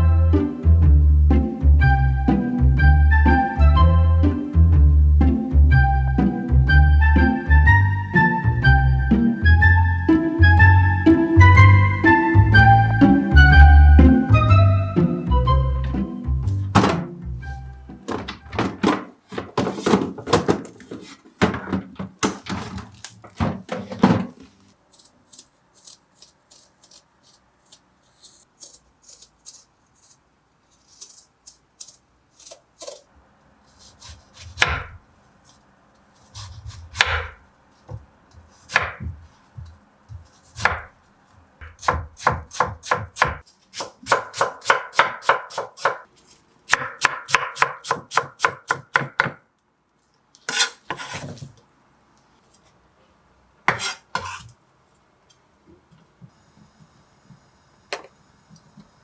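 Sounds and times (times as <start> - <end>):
knife chopping on cutting board: 33.9 - 35.0, 36.2 - 41.0, 41.6 - 46.0, 46.7 - 49.4, 53.7 - 54.5.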